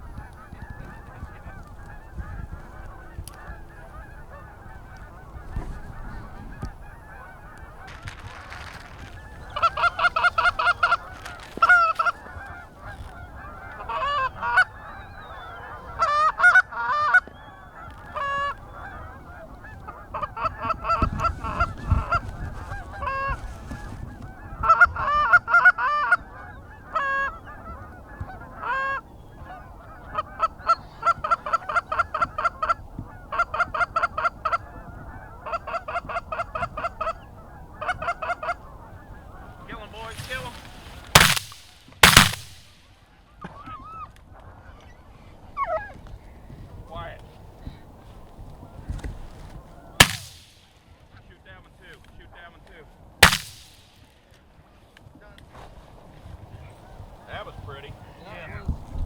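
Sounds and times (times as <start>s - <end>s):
goose honking: 0.2s - 23.4s, 24.4s - 42.6s.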